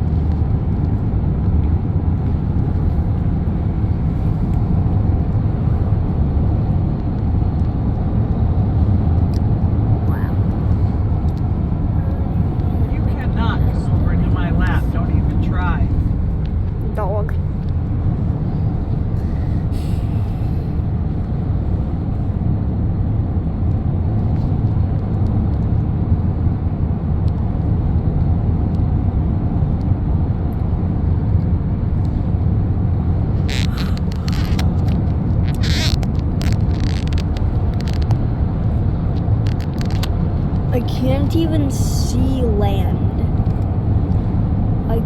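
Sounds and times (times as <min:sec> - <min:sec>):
car road and engine drone: 0:00.0 - 0:45.0
scratchy noises: 0:33.3 - 0:38.2.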